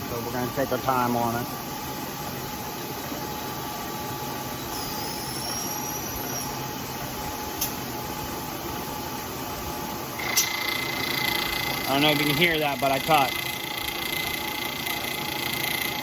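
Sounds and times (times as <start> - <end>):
faint high whistle: 4.7 - 6.6
milling machine running: 10.2 - 16.0.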